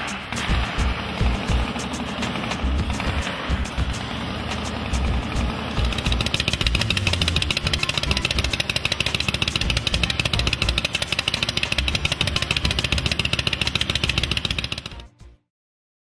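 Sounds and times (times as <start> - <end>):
motorcycle engine running: 0.0 - 15.2.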